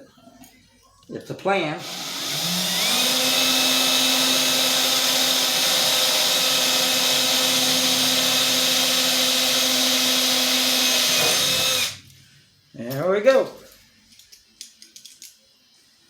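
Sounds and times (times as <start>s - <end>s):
electric drill motor whining: 1.8s - 12.0s.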